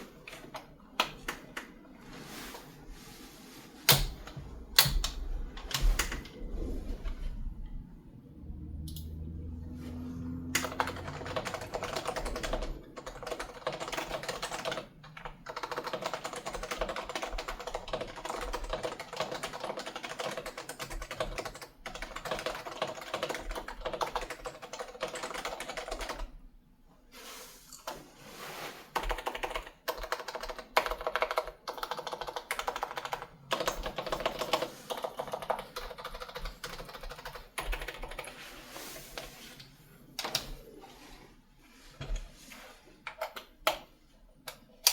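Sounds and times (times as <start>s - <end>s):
typing on a quiet keyboard: 10.6s - 26.4s, 29.0s - 38.4s, 43.1s - 44.9s.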